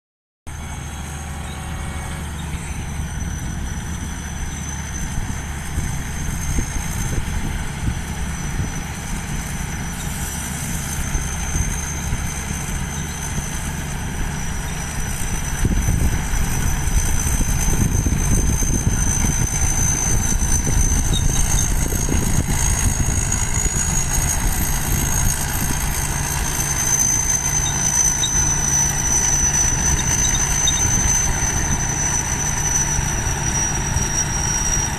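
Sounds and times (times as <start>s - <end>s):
engine running: 0.5s - 34.9s
thin high whine: 0.5s - 34.9s
wind buffeting microphone: 5.0s - 9.9s, 14.0s - 34.9s.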